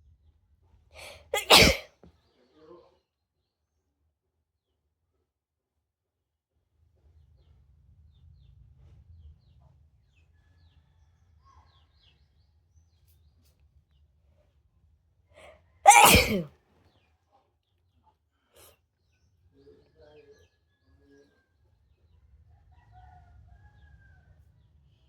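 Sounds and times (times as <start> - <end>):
breath drawn in: 1.0 - 1.8, 15.9 - 16.4
person sneezing: 1.0 - 1.8, 15.9 - 16.5.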